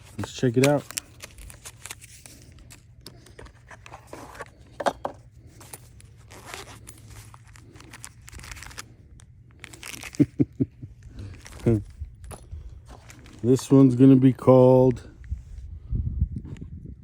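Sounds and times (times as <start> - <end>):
packaging tearing and crinkling: 0.0 - 2.8, 5.7 - 10.4.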